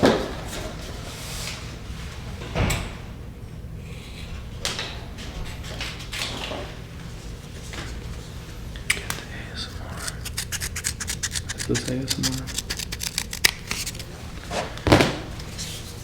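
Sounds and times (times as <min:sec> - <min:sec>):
tape peeling and rubbing: 0:08.8 - 0:15.9.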